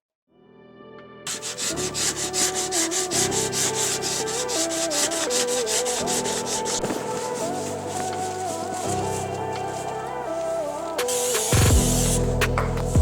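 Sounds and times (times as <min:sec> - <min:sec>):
background music with scratchy beat: 0:10.9 - 0:13.0.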